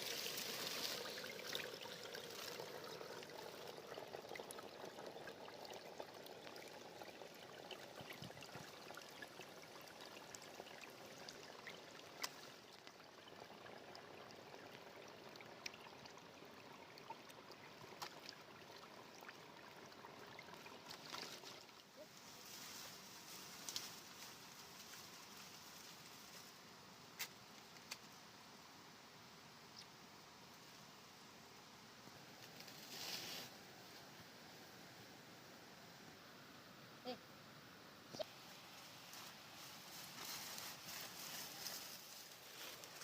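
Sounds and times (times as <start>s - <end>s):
water trickling: 0.0s - 22.0s, 38.2s - 43.0s.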